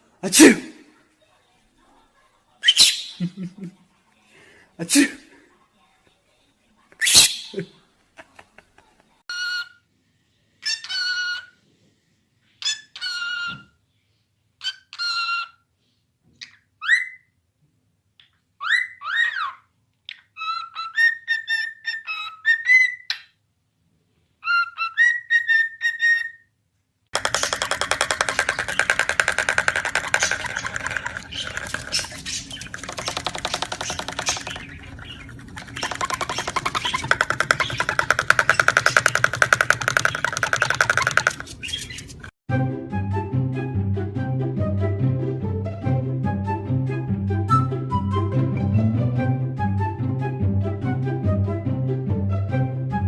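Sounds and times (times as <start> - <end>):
parrot calls and whistles: 2.6 - 3.3, 7.0 - 7.6, 10.6 - 11.6, 12.6 - 13.8, 14.6 - 15.6, 16.4 - 17.3, 18.6 - 23.3, 24.4 - 26.4, 27.5 - 42.3.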